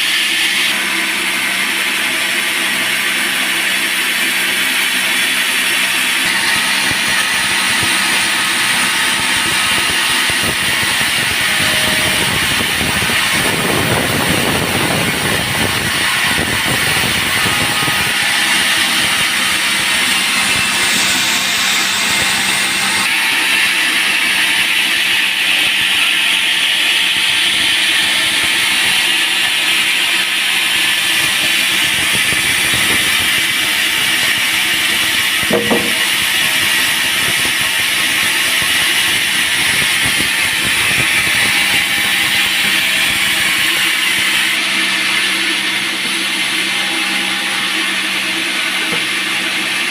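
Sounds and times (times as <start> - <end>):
sawmill machine hum: 0.0 - 49.9.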